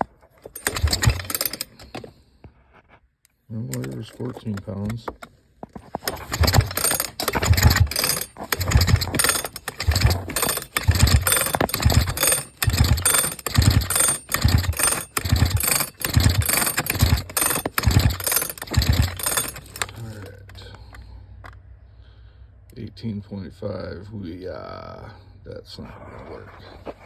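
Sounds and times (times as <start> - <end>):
chainsaw recoil starter pulls: 0.0 - 2.2, 3.6 - 5.1, 5.8 - 20.8.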